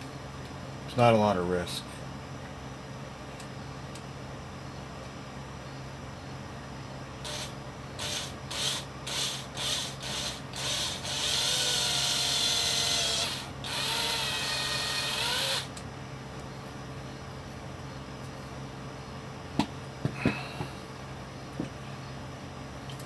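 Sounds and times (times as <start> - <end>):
electric drill whining: 7.2 - 15.8.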